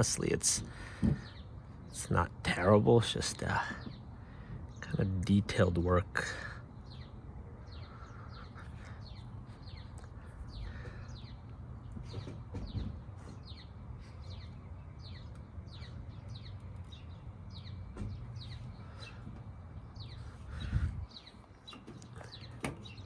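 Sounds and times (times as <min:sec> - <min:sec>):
birds chirping: 0:00.0 - 0:23.0
steady low rumble: 0:00.0 - 0:23.0.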